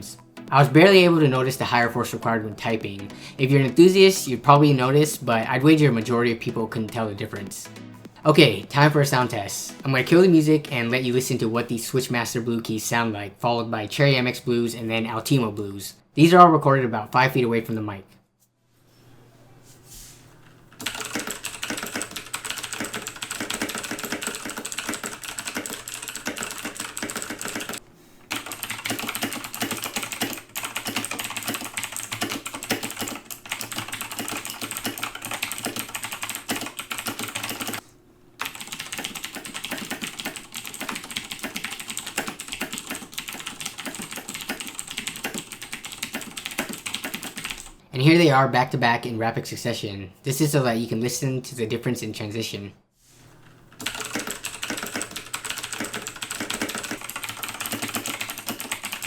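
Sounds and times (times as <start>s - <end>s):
fast mechanical keyboard typing: 20.7s - 37.8s, 38.4s - 47.8s, 53.7s - 59.0s.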